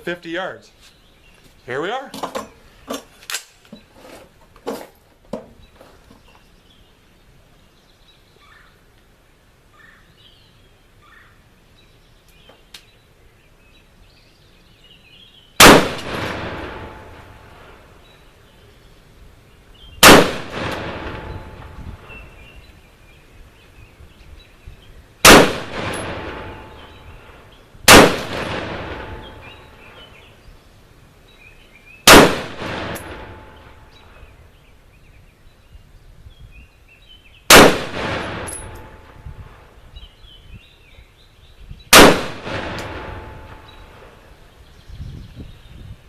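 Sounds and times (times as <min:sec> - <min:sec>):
rifle single shots with echo: 0:15.6 - 0:18.0, 0:20.0 - 0:22.2, 0:25.2 - 0:30.2, 0:32.0 - 0:34.2, 0:37.5 - 0:39.6, 0:41.9 - 0:44.3.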